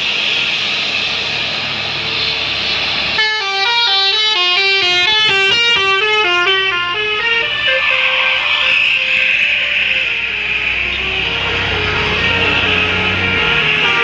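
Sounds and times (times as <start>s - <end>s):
musical bus horn melody: 3.2s - 14.0s.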